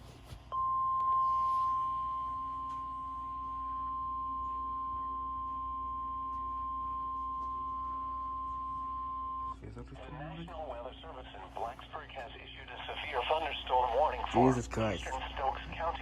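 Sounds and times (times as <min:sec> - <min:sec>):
steady warning alarm tone: 0:00.5 - 0:09.6.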